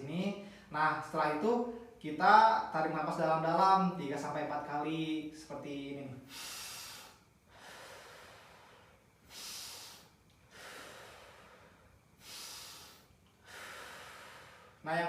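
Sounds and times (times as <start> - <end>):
man taking deep breaths: 0.4 - 0.7, 6.2 - 14.9.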